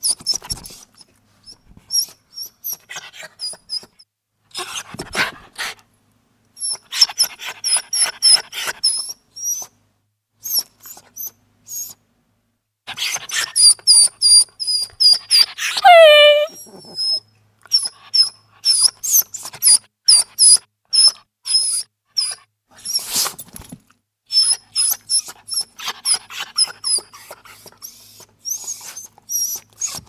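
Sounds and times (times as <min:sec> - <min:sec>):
small dog whimpering: 0:15.8 - 0:17.2, 0:28.4 - 0:30.0.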